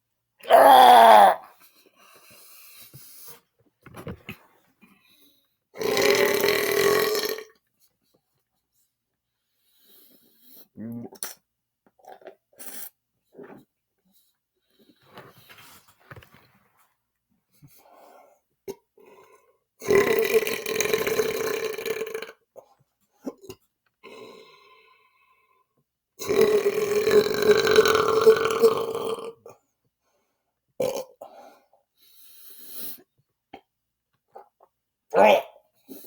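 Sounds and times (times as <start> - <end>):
man belching: 0.4 - 1.4, 5.8 - 7.5, 19.8 - 22.4, 26.2 - 29.4, 30.8 - 31.2, 35.1 - 35.6.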